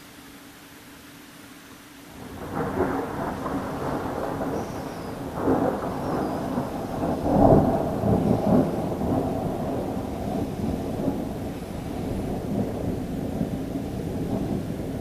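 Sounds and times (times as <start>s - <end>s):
thunder rumbling: 2.2s - 15.0s.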